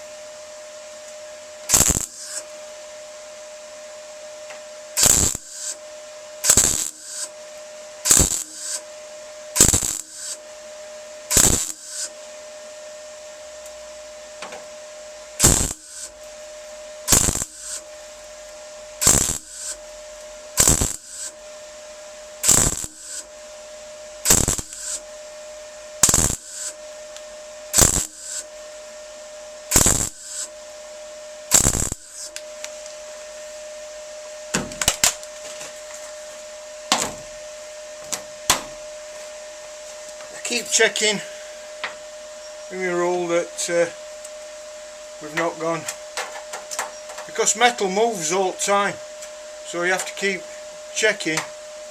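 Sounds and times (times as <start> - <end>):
steady hum: 0.0 - 51.9
welder tack welding bursts: 1.7 - 2.5, 5.0 - 7.4, 8.0 - 8.9, 9.5 - 10.5, 11.3 - 12.2, 15.3 - 16.4, 17.0 - 18.2, 18.9 - 21.4, 22.4 - 23.4, 24.2 - 25.1, 26.0 - 26.8, 27.7 - 28.5, 29.6 - 30.6, 31.5 - 32.5, 34.6 - 35.4.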